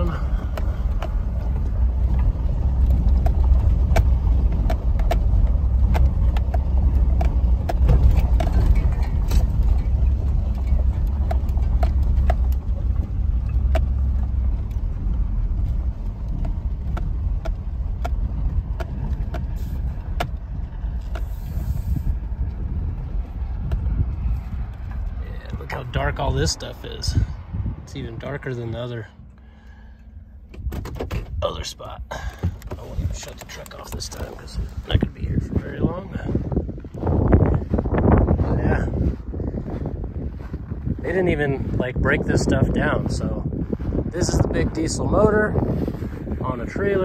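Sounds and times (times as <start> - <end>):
knocks and rattles: 0.0 - 21.3, 30.4 - 36.5
truck engine and road rumble: 0.0 - 47.0.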